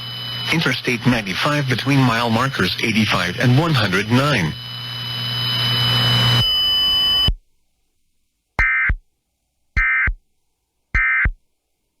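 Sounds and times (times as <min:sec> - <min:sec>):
hum and hiss with high tone: 0:00.0 - 0:07.4.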